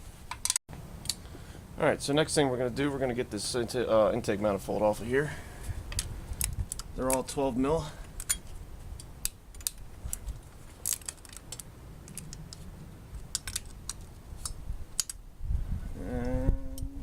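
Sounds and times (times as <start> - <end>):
metallic clicks of hand tools: 13.3 - 15.2.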